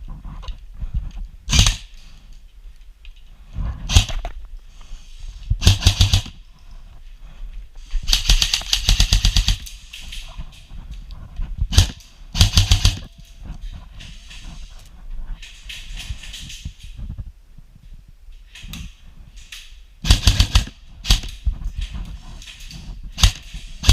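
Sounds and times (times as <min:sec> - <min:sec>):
airsoft rifle full-auto bursts: 0:01.5 - 0:01.9, 0:05.6 - 0:06.4, 0:08.1 - 0:09.6, 0:11.7 - 0:13.1, 0:20.0 - 0:21.3, 0:23.2 - 0:23.9.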